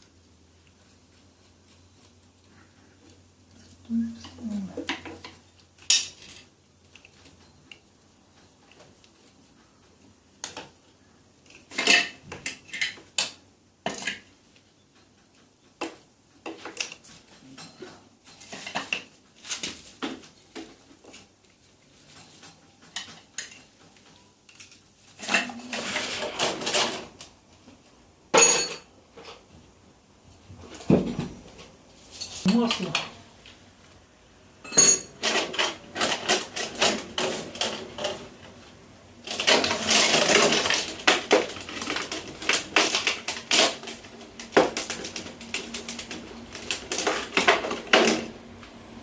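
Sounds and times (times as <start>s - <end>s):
metal tools clinking and clattering: 28.4s - 28.9s, 34.7s - 37.8s.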